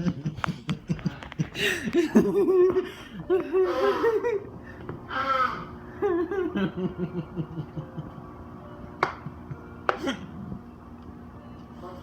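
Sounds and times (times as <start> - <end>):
person chuckling: 0.0 - 4.5.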